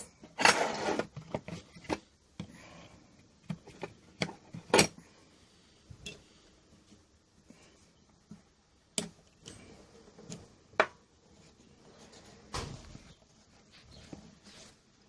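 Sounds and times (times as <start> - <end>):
soft rustle: 11.2 - 15.0.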